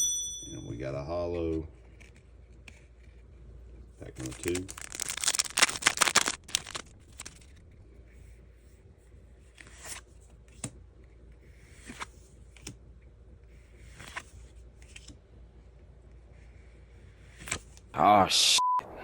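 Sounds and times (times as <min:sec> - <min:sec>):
trading cards swishing: 0:04.1 - 0:07.6.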